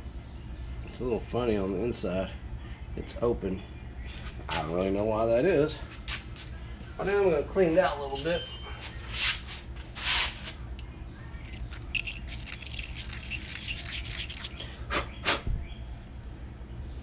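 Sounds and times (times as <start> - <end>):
hand tool scraping metal threads: 8.0 - 9.4, 11.4 - 14.6.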